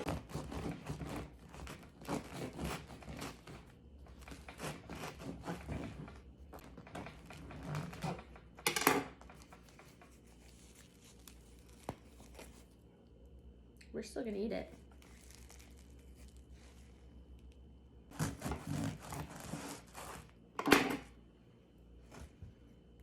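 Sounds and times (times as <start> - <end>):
knife cutting crusty bread: 0.0 - 12.7, 18.1 - 20.4.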